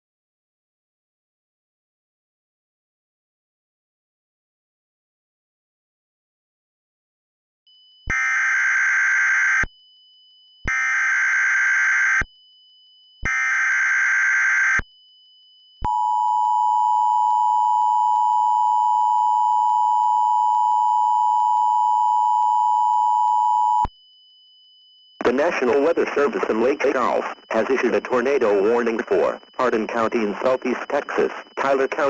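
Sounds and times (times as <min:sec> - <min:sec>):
header data tones: 0:25.2 - 0:32.0
steady two-tone attention signal: 0:25.2 - 0:32.0.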